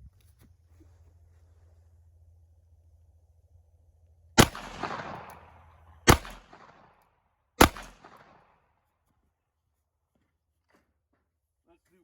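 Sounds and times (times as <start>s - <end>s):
pistol gunshots with echo: 4.4s - 7.0s, 7.6s - 8.6s.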